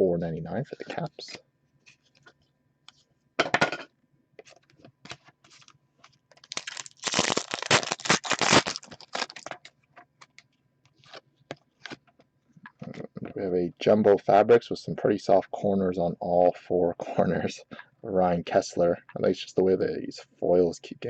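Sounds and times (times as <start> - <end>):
card pack wrapper tearing: 6.3 - 9.7.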